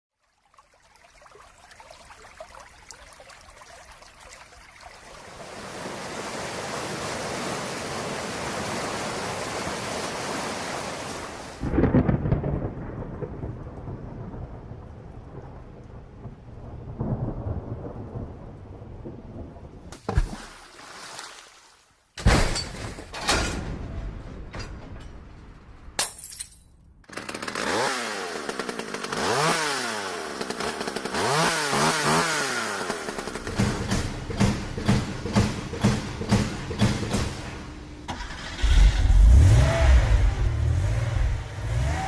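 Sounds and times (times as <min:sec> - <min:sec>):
rain downpour: 0:00.3 - 0:20.0
thunderclap with rolling rumble: 0:11.6 - 0:19.9.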